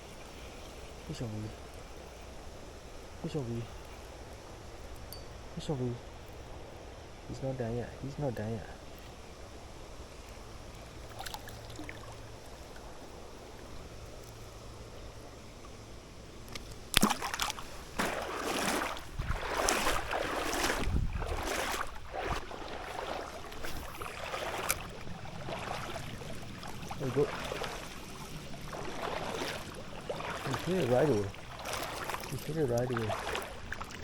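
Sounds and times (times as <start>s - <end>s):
faint steady hum: 0.0s - 34.0s
fish splashing and thrashing in water: 11.0s - 12.9s, 16.5s - 34.0s.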